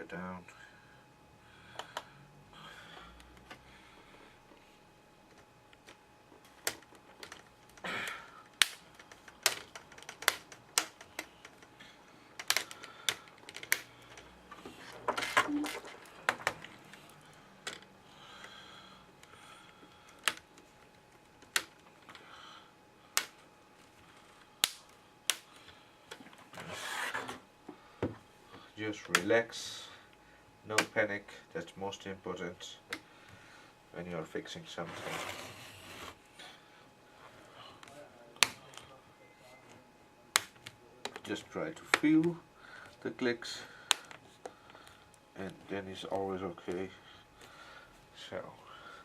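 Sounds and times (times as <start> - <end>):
plastic clips clicking into place: 12.4 - 14.2.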